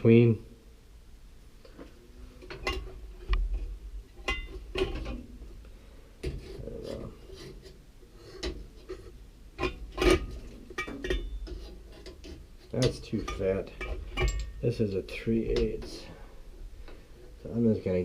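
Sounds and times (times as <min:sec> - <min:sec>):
metal bolts clinking and knocking: 0:02.4 - 0:05.3, 0:09.6 - 0:14.8.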